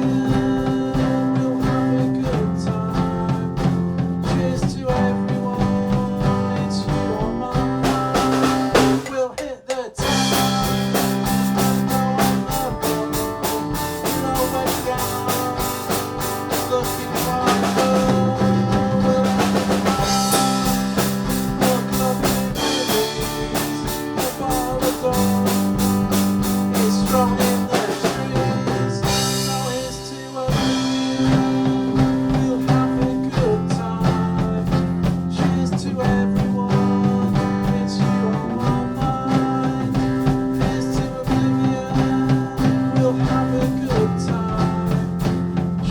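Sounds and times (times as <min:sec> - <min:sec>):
drum kit beat: 0:00.0 - 0:45.9
electric guitar: 0:10.0 - 0:45.9.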